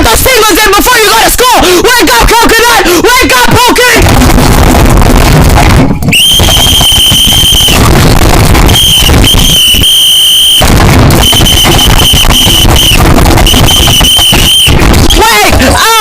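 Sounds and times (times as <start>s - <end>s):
harsh distorted noise: 0.0s - 16.0s
shrill steady high tone: 8.8s - 16.0s.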